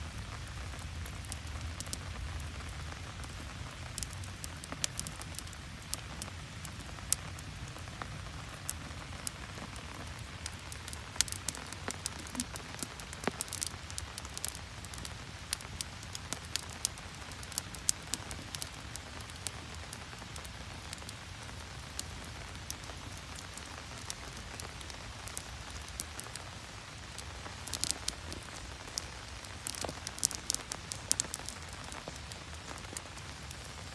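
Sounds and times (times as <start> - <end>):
steady rain: 0.0 - 33.9.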